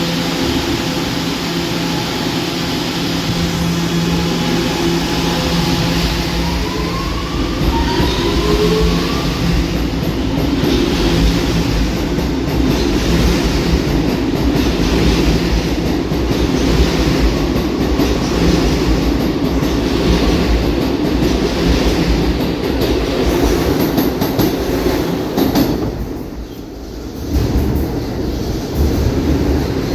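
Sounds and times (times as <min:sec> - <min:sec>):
train motor whine: 0:00.0 - 0:22.2
rail clicks: 0:00.0 - 0:29.9
wheels rumbling on rail: 0:00.0 - 0:29.9.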